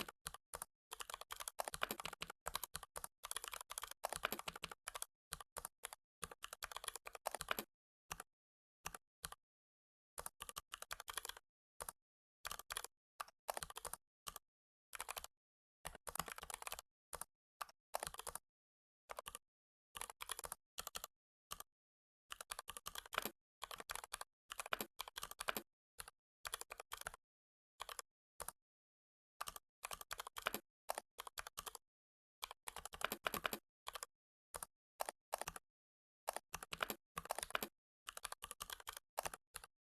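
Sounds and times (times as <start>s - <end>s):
computer keyboard typing: 0.0s - 8.2s, 10.2s - 12.0s, 13.5s - 14.0s, 14.9s - 15.3s, 15.9s - 17.3s, 18.0s - 18.4s, 20.0s - 21.6s, 22.3s - 25.7s, 26.5s - 27.2s, 29.9s - 31.8s, 32.6s - 35.6s, 36.3s - 39.7s.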